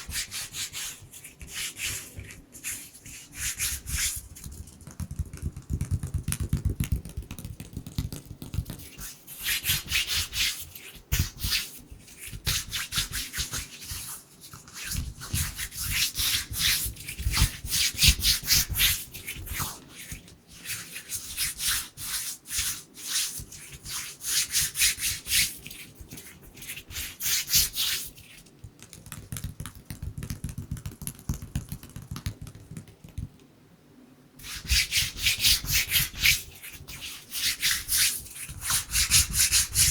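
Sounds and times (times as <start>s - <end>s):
hands rubbing together: 0.0s - 4.8s, 34.4s - 39.9s.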